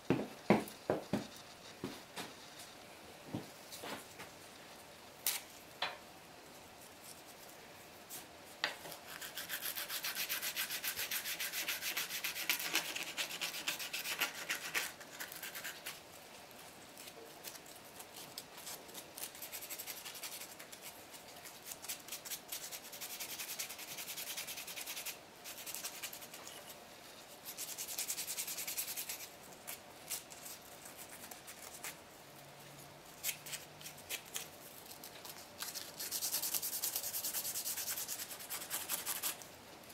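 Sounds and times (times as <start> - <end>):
sandpaper rubbing on wood: 9.1 - 15.8, 35.8 - 39.4.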